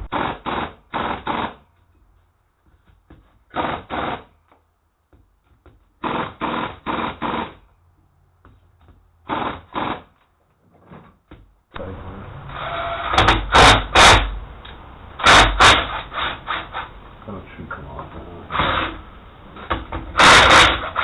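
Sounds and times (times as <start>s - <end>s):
power tool bursts: 0.0s - 1.6s, 6.0s - 7.6s, 9.3s - 10.1s, 11.8s - 14.4s, 15.2s - 16.9s, 18.5s - 19.0s, 19.7s - 21.0s
faint steady hum: 11.7s - 21.0s.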